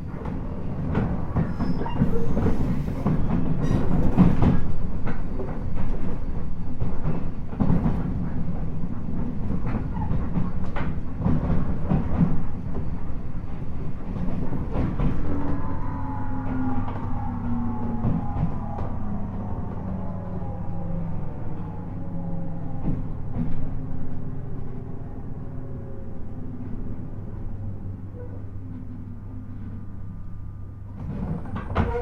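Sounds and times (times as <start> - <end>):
electric train rumbling: 0.0 - 32.0
train whine falling in pitch: 14.6 - 24.7, 31.6 - 32.0.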